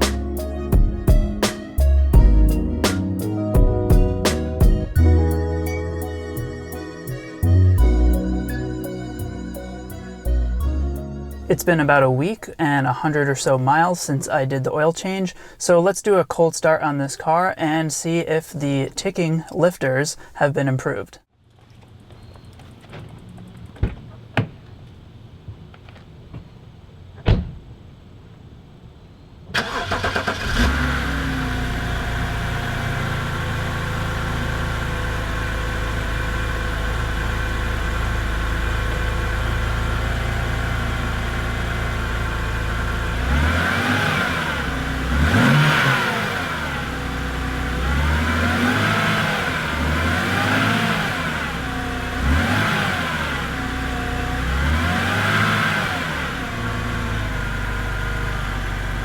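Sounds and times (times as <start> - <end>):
car engine idling and revving: 0.0 - 11.9, 27.9 - 59.0.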